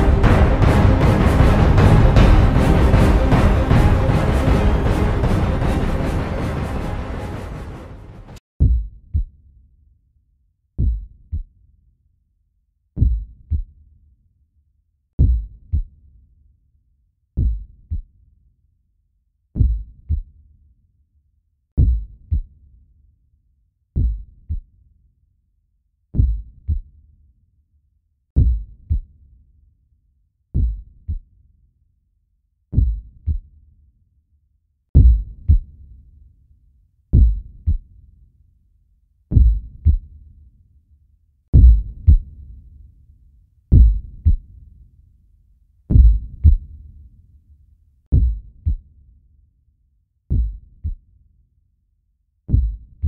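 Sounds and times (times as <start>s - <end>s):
heartbeat thumps: 13.0s - 13.6s, 15.2s - 15.9s, 17.4s - 18.0s, 19.6s - 20.3s, 21.8s - 22.5s, 24.0s - 24.6s, 26.2s - 26.9s, 28.4s - 29.0s, 30.6s - 31.2s, 32.8s - 33.4s, 35.0s - 35.7s, 37.2s - 37.8s, 39.3s - 40.1s, 41.5s - 42.3s, 43.7s - 44.4s, 45.9s - 46.7s, 48.1s - 48.8s, 50.3s - 51.0s, 52.5s - 52.8s.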